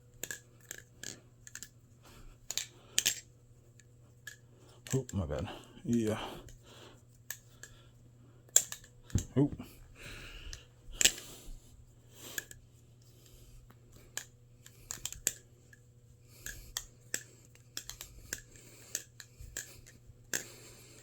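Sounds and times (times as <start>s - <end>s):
metallic clicks of balisong flipping: 0.1s - 1.8s, 2.4s - 5.2s, 7.3s - 7.8s, 8.5s - 9.3s, 10.5s - 11.3s, 13.7s - 15.8s, 16.4s - 21.0s.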